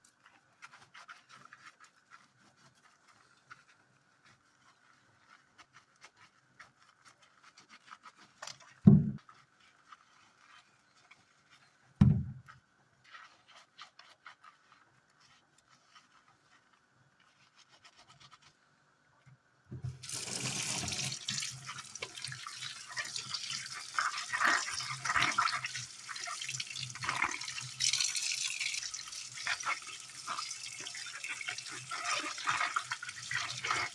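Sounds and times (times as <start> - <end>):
water running from a tap: 19.8 - 33.9.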